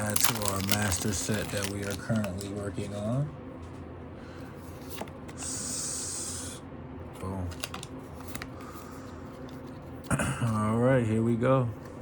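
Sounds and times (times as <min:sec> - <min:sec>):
card sliding into plastic sleeve: 0:07.5 - 0:08.6
cards clicking and tapping: 0:07.5 - 0:08.6.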